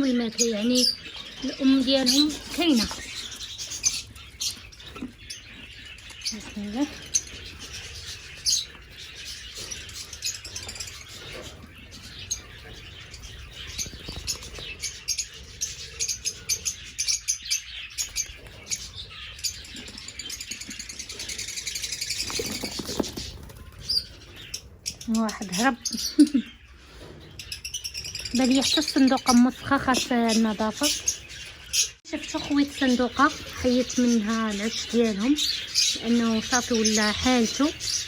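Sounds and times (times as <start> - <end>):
small birds chirping: 0.0 - 38.0
wing flapping: 13.2 - 15.1, 21.8 - 24.2.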